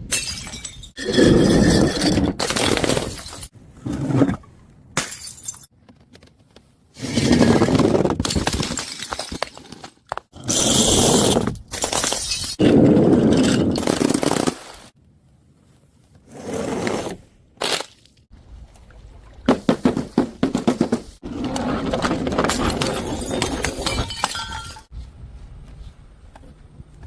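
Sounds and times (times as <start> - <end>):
glass breaking: 0.1 - 3.5, 22.5 - 24.9
things being crushed: 0.1 - 3.5, 19.5 - 24.9.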